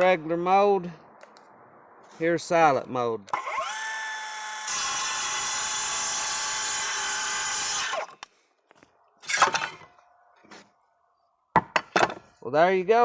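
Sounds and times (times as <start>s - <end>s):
circular saw cutting wood: 3.4s - 8.2s.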